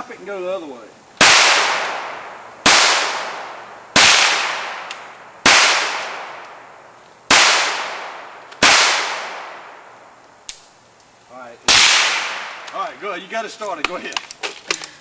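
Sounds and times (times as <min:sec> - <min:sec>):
rifle gunshots with echo: 0:01.2 - 0:06.6, 0:07.3 - 0:09.9, 0:11.7 - 0:12.6.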